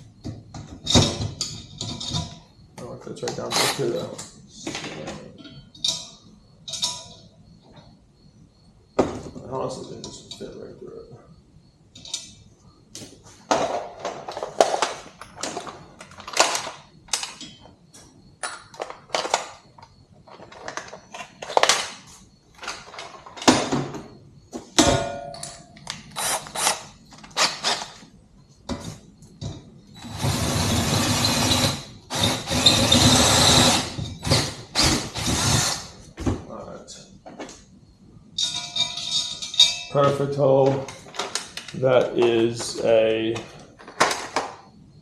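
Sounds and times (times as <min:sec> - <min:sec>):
metal tools clinking: 0:05.0 - 0:07.3, 0:09.8 - 0:10.6, 0:38.4 - 0:44.4
power drill drilling: 0:26.2 - 0:26.8, 0:30.0 - 0:35.9.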